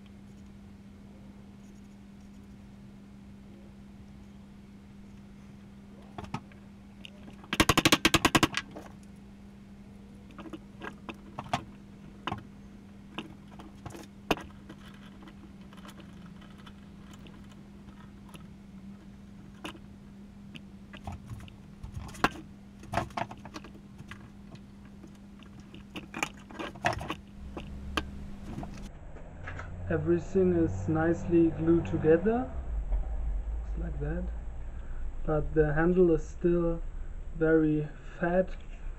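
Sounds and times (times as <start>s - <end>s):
steady low hum: 0.0s - 38.9s
knocks and clicks: 7.3s - 8.9s, 20.5s - 29.7s.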